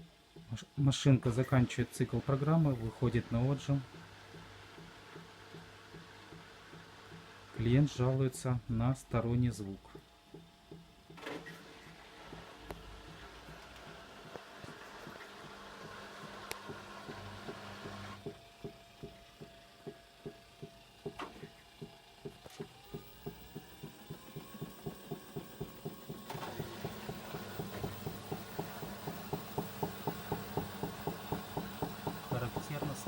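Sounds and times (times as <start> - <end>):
washing machine motor whine: 0.0 - 33.0
washing machine drum knocking: 12.3 - 14.4, 15.0 - 33.0.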